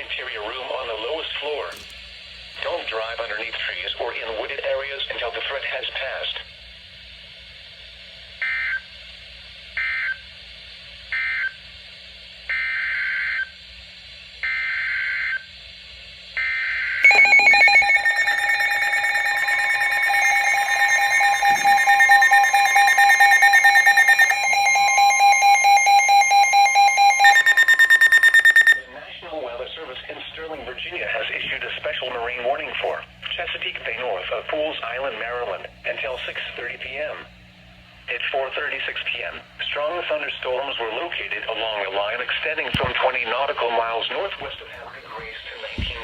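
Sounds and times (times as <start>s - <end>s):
steady alert attention tone: 17.0s - 28.8s
warbling digital data bursts: 17.0s - 28.8s.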